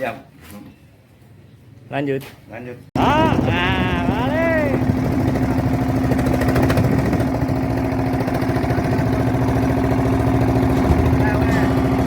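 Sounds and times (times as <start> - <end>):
boat engine running: 3.0 - 12.0.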